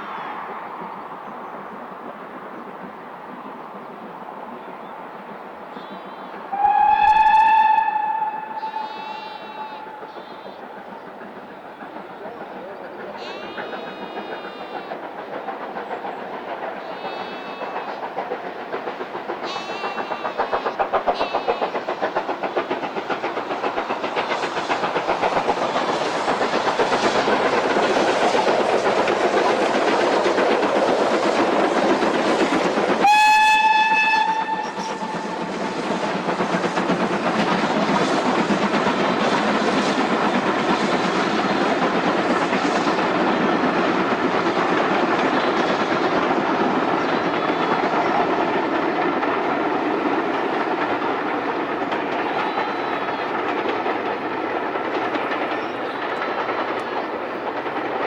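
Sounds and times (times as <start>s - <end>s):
steam locomotive exhaust beats: 0.0s - 58.0s
steam whistle blast: 6.5s - 10.6s, 33.0s - 35.4s.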